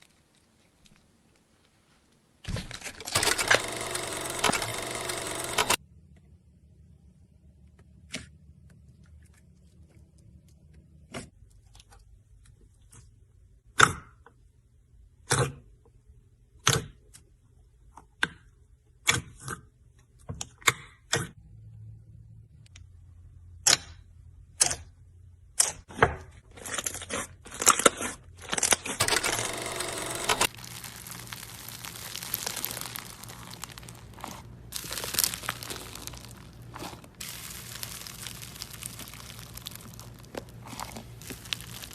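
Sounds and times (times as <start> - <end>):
slime crackling: 30.5 - 41.9.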